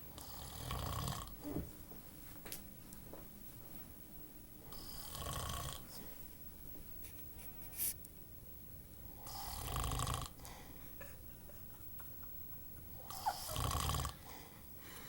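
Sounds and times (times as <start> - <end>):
person snoring: 0.2 - 1.3, 4.8 - 5.9, 9.2 - 10.7, 13.0 - 14.3.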